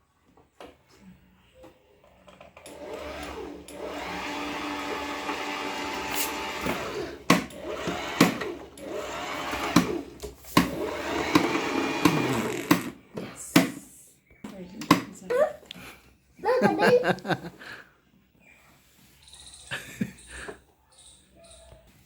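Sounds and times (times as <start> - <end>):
sewing machine motor running: 2.6 - 13.0.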